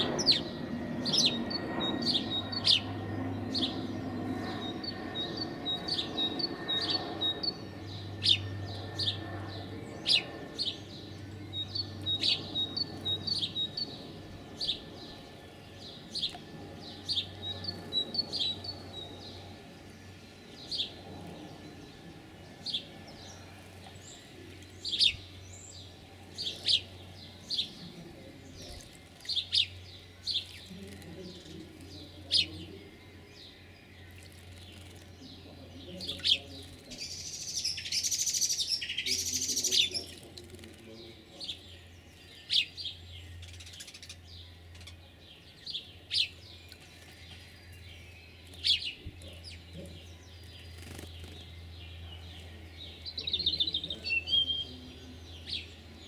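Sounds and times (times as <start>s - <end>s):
small songbirds chirping: 0.0s - 56.0s.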